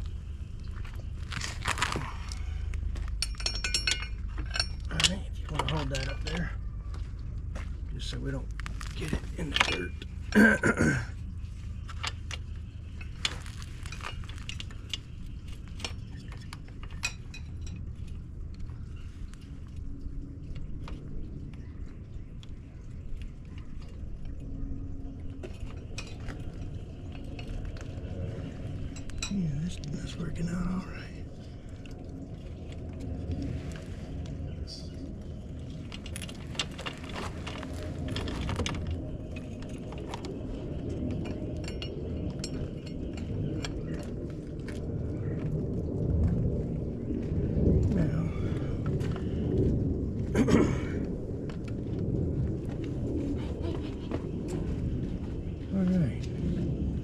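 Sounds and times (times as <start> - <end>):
low rumble: 0.0 - 57.0
steady low hum: 0.0 - 57.0
metal chain clinking and rattling: 2.9 - 6.6, 11.8 - 18.3, 35.8 - 44.3
metal chain links clinking: 3.1 - 5.3.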